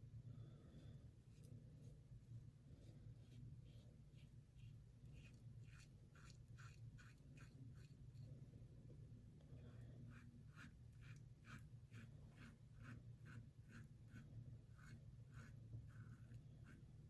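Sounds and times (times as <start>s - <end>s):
razor scraping across face: 3.2s - 8.0s, 10.1s - 16.9s.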